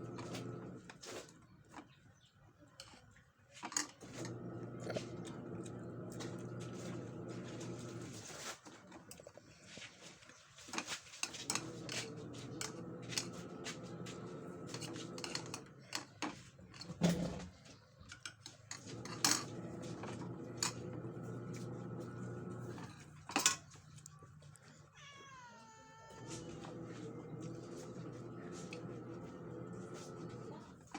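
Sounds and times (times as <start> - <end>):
cat meowing: 24.8 - 26.8.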